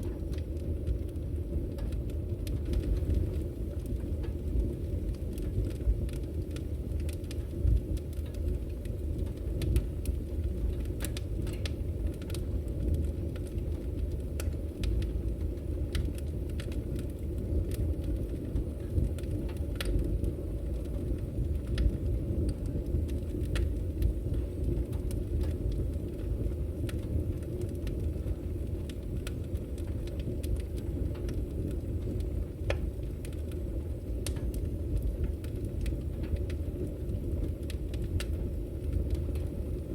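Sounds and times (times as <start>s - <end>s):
fire crackling and popping: 0.0s - 39.9s
fire rumbling in a fireplace: 0.0s - 39.9s.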